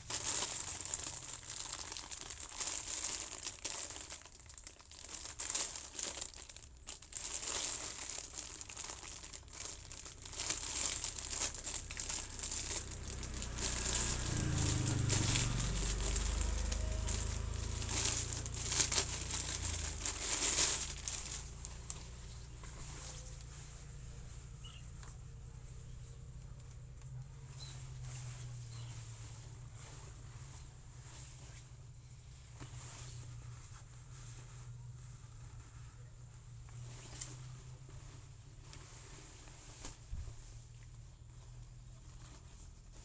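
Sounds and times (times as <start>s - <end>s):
packaging crinkling: 0.0s - 24.0s
low rumble: 8.0s - 36.9s.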